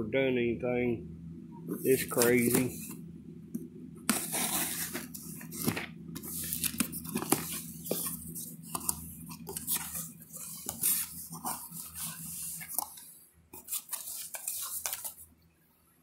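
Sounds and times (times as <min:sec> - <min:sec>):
packaging crinkling and clicks: 0:04.1 - 0:13.0.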